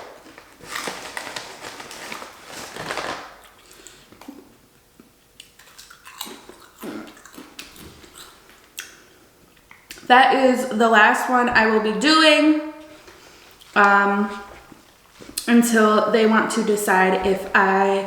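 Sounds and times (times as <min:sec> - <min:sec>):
person chewing noodles: 0:03.4 - 0:10.1, 0:12.8 - 0:13.8.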